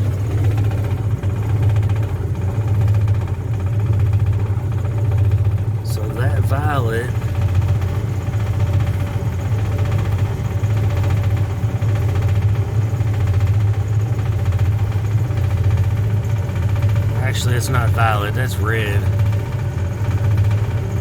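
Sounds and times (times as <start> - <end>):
hvac unit low hum: 5.4 - 8.0, 16.4 - 19.5.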